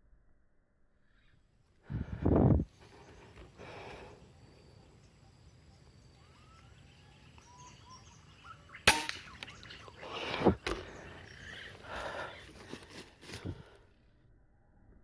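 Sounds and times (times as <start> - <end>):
faint bird chirps: 0.9 - 12.6
air rifle shot: 8.8 - 9.5.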